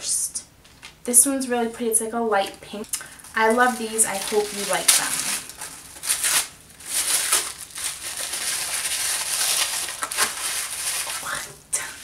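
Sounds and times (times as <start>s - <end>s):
wrapping paper crinkling and tearing: 3.0s - 11.5s.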